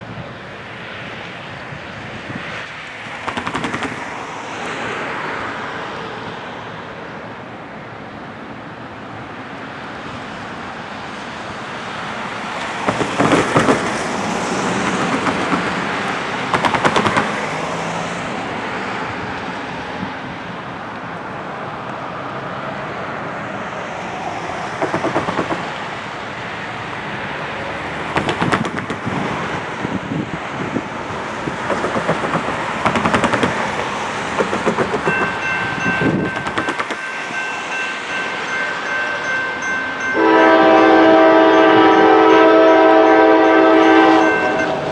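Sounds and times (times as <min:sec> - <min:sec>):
train wheels rumbling on rail: 0:00.0 - 0:44.9
wheels clacking over rail joints: 0:02.6 - 0:04.8, 0:12.1 - 0:19.8, 0:24.1 - 0:40.1.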